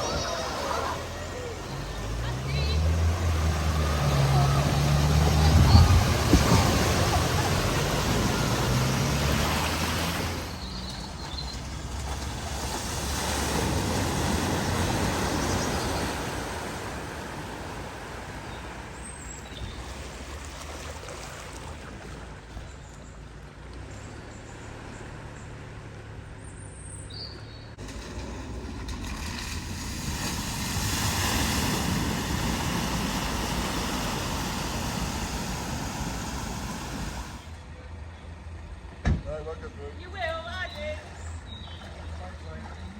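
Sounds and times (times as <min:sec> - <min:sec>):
car engine running: 0:00.0 - 0:12.7, 0:22.4 - 0:39.0
water rushing and splashing: 0:00.0 - 0:26.3, 0:27.7 - 0:37.7.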